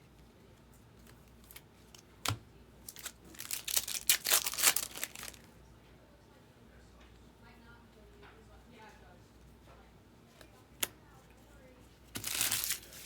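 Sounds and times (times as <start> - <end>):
plastic wrapping tearing and crinkling: 2.9 - 5.5, 12.1 - 13.0.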